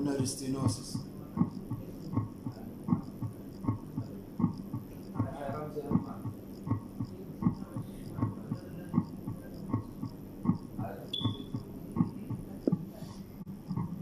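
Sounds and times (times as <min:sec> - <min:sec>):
heartbeat through stethoscope: 0:00.0 - 0:14.0.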